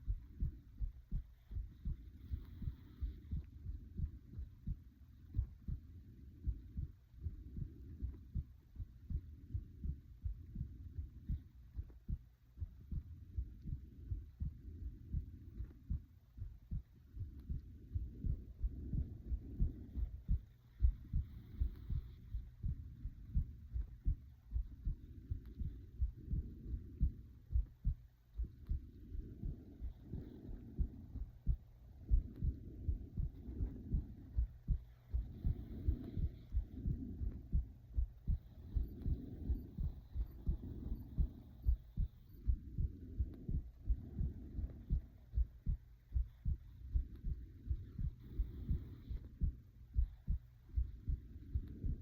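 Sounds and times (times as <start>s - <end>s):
heartbeat thumps: 0.0s - 52.0s
breathing: 2.0s - 3.5s, 18.7s - 22.5s, 47.9s - 49.4s.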